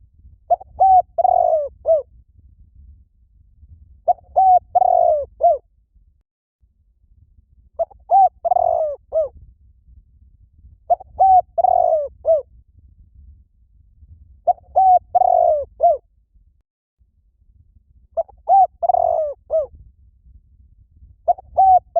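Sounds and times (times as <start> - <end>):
dove cooing: 0.5 - 2.0, 4.1 - 5.6, 7.8 - 9.3, 10.9 - 12.4, 14.5 - 16.0, 18.2 - 19.7, 21.3 - 21.9.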